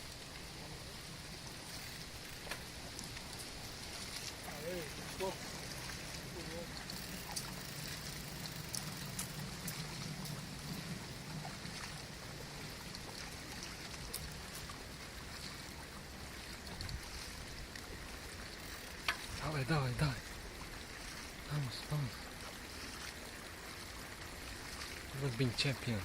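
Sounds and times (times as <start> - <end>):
light clicks and rattles: 1.6 - 10.8.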